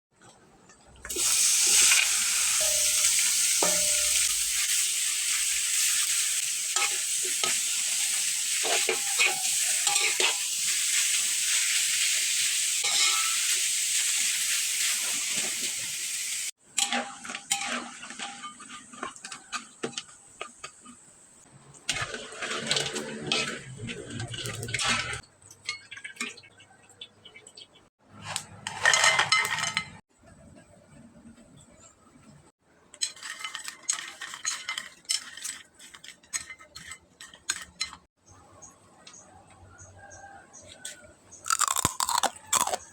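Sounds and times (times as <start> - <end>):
utensils clinking against a pan: 1.0 - 21.0, 28.3 - 30.0, 32.9 - 38.1
oil sizzling in deep fryer: 1.0 - 26.4.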